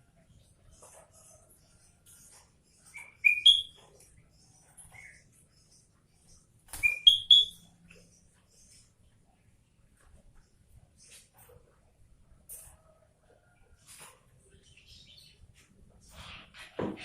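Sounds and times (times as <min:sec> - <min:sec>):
bulbul whistled calls: 0:03.0 - 0:03.8, 0:06.7 - 0:07.7.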